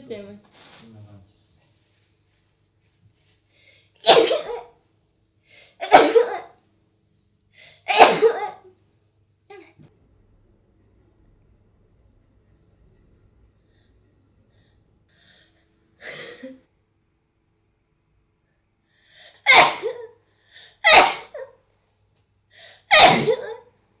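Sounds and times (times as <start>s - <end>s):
person sneezing: 4.0s - 4.8s, 5.8s - 6.5s, 7.9s - 8.6s, 19.5s - 20.1s, 20.8s - 21.6s, 22.9s - 23.6s.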